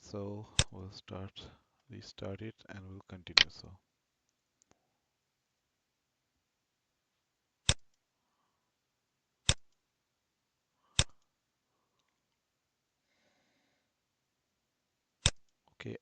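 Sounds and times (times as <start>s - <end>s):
computer mouse clicks: 9.4s - 9.8s, 15.2s - 15.6s.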